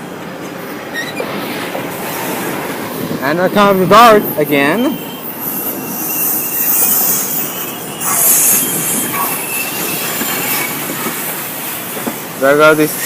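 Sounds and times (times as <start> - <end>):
light rail train passing: 0.0 - 13.0
wheel squeal: 0.9 - 1.4, 4.5 - 11.4.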